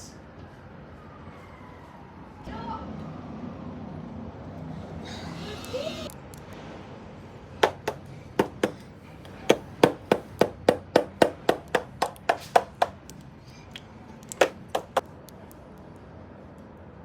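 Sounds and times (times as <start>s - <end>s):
sharp bangs on a hard surface: 7.6s - 13.0s, 14.4s - 15.0s.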